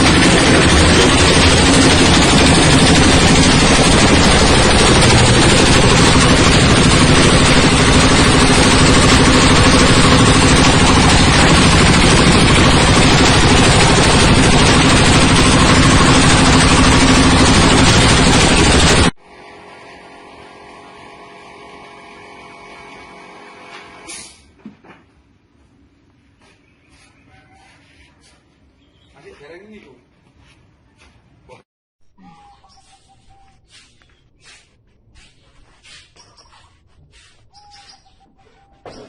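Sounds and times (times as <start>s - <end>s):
machine running with mechanical din: 0.0s - 24.1s.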